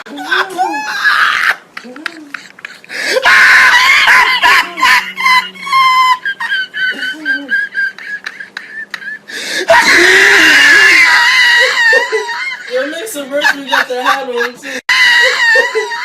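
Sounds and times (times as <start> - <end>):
person screaming: 0.1 - 1.6, 3.1 - 6.2, 9.6 - 12.5, 14.9 - 16.0.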